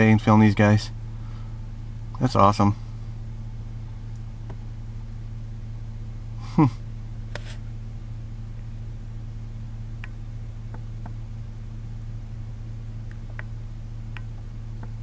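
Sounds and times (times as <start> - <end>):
low mechanical hum: 0.0 - 15.0
click: 13.1 - 13.5, 14.1 - 15.0.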